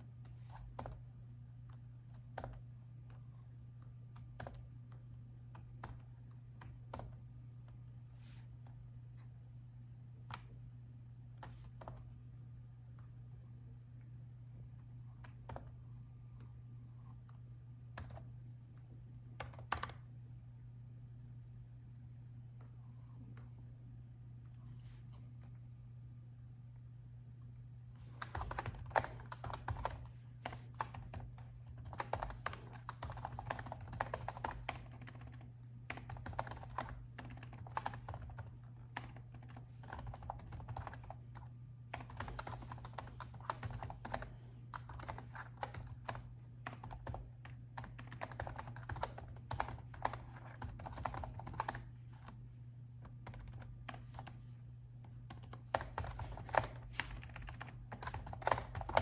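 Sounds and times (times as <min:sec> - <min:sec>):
typing on laptop keyboard: 0:00.4 - 0:01.0, 0:02.1 - 0:02.7, 0:04.1 - 0:07.2, 0:17.9 - 0:18.3, 0:19.4 - 0:20.1, 0:28.2 - 0:52.4, 0:53.0 - 0:54.4, 0:55.1 - 0:59.0.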